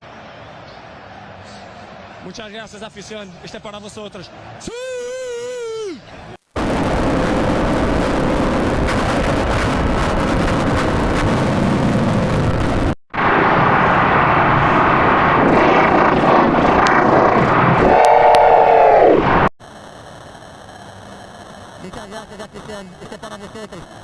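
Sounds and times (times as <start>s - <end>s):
stadium crowd roar: 0.0s - 6.4s, 17.4s - 19.5s
crowd shouting drawn-out siuuu: 17.8s - 19.2s.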